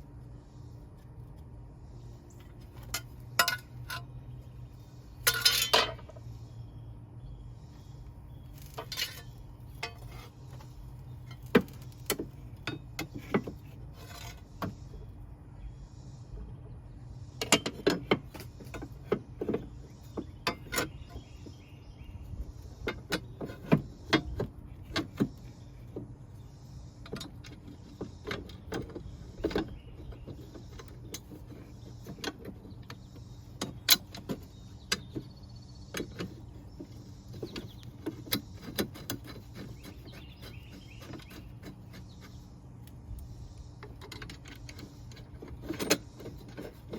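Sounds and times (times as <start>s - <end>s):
metal tools clinking: 2.8s - 4.1s, 5.2s - 6.2s.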